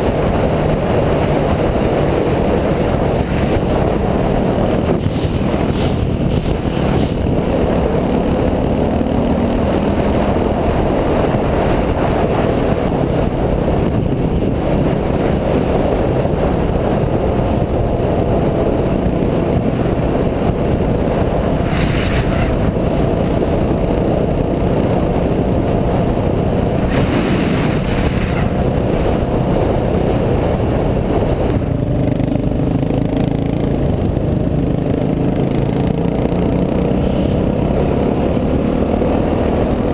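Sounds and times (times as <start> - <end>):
dirt bike engine running: 0.0 - 18.6.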